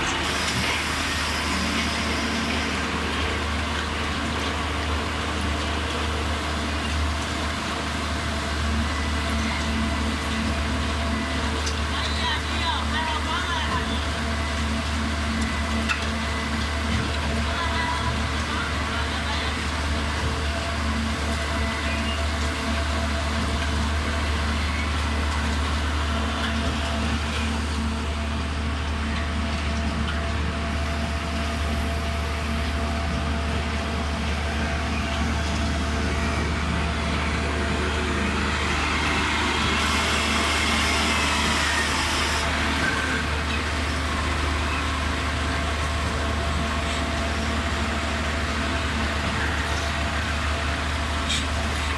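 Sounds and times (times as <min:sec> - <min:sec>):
truck engine humming with hiss: 0:00.0 - 0:51.9.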